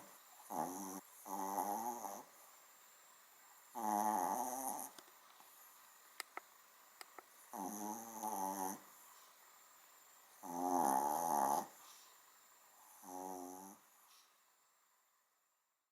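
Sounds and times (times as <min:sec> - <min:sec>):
small dog snoring: 0:00.0 - 0:02.4, 0:03.7 - 0:05.0, 0:07.5 - 0:09.0, 0:10.4 - 0:12.0, 0:12.8 - 0:14.3.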